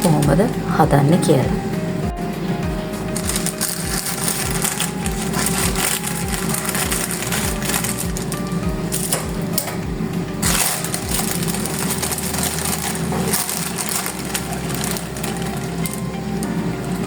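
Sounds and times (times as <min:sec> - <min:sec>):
kale leaves crinkling and rustling: 0:03.2 - 0:09.5, 0:10.4 - 0:17.0.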